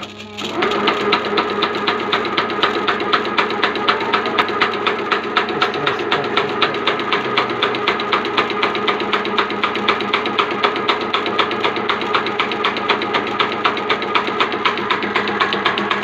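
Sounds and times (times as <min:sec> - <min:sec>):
machine rapid ticking: 0:00.0 - 0:16.0
steady machine hum: 0:00.0 - 0:16.0.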